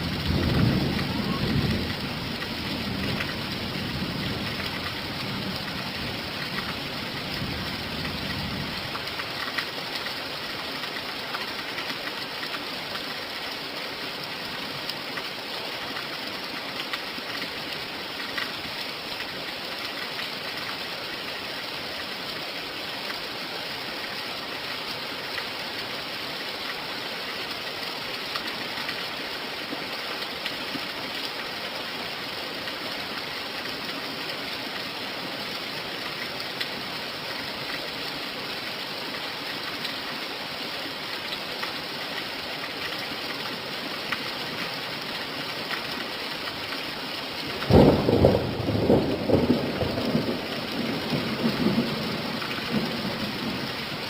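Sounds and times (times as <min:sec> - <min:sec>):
steady rain hiss: 0:00.0 - 0:54.0
faint raindrop ticks: 0:00.2 - 0:03.6, 0:04.4 - 0:13.1, 0:14.8 - 0:20.8, 0:41.0 - 0:53.8.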